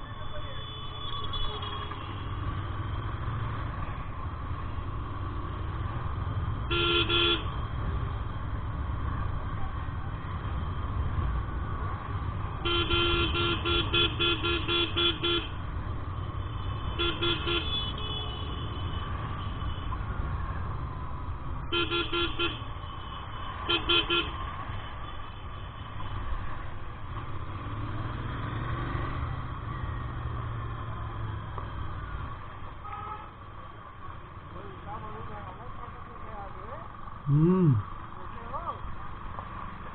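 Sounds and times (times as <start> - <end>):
road and wind rumble: 0.0 - 39.9
vehicle horn beeping: 0.3 - 2.3, 6.7 - 7.5, 12.6 - 15.5, 16.7 - 19.9, 32.8 - 33.3.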